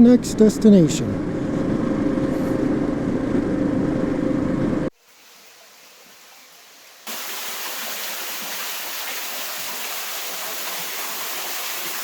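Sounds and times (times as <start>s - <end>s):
running water rushing: 5.0s - 12.0s.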